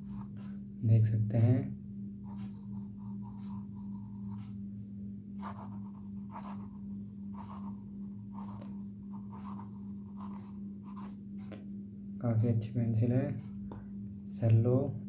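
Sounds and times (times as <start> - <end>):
pencil scratching on paper: 0.0 - 0.3, 2.3 - 4.5, 5.4 - 11.2
low electrical hum: 0.0 - 15.0.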